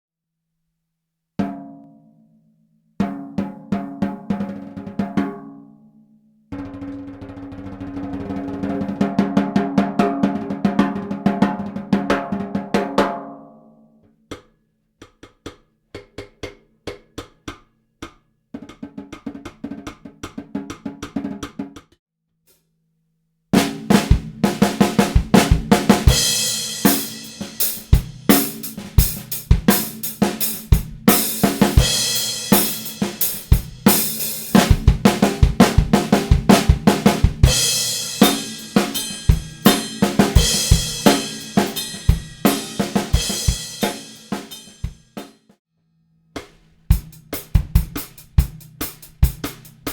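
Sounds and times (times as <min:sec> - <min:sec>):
full drum kit playing: 0:06.6 - 0:13.2, 0:23.6 - 0:45.4, 0:46.4 - 0:49.9
snare drum strokes: 0:31.1 - 0:45.3.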